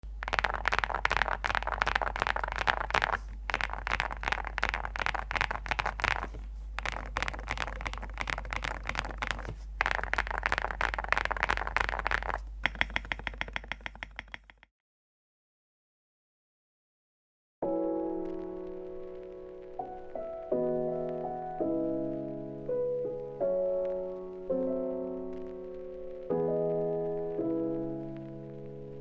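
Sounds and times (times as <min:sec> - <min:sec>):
mechanical keyboard typing: 0:00.0 - 0:14.7.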